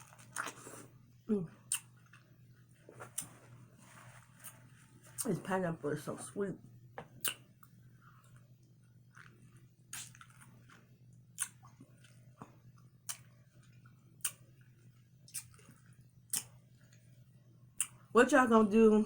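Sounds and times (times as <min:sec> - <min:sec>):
person chewing: 0:00.0 - 0:00.9, 0:01.6 - 0:03.6, 0:07.2 - 0:08.5, 0:09.1 - 0:17.0
wet mouth clicks: 0:01.7 - 0:01.9, 0:07.2 - 0:07.4, 0:09.9 - 0:10.3, 0:11.4 - 0:11.7, 0:15.3 - 0:15.7, 0:16.3 - 0:16.5.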